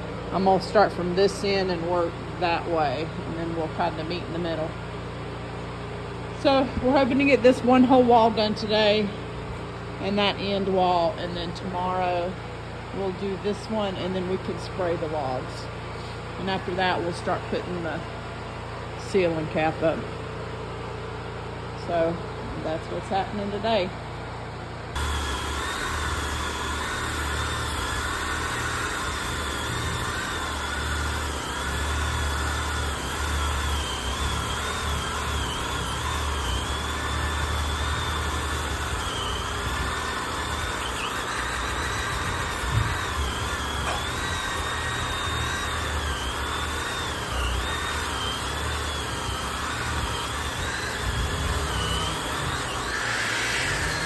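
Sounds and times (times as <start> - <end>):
electric sander whining on wood: 0.0 - 4.8, 6.4 - 9.2, 24.9 - 54.0.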